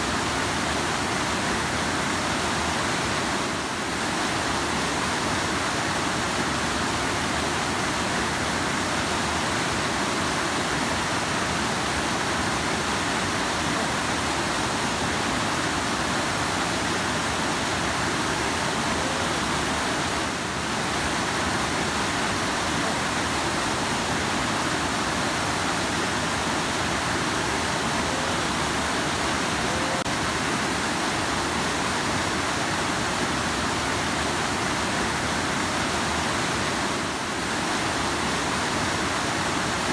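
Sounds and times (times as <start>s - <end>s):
fast-flowing river rushing: 0.0s - 39.9s.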